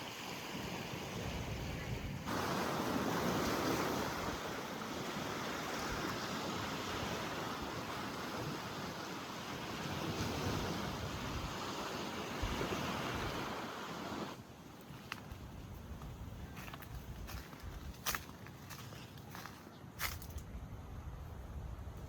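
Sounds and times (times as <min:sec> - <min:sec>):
ocean surf washing on shore: 0:00.0 - 0:14.5
wind gusting on microphone: 0:00.4 - 0:14.4.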